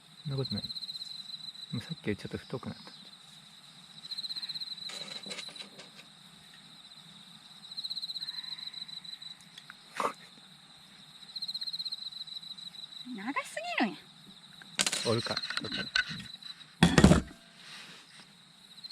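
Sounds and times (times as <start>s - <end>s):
insect trilling: 0.0s - 16.8s.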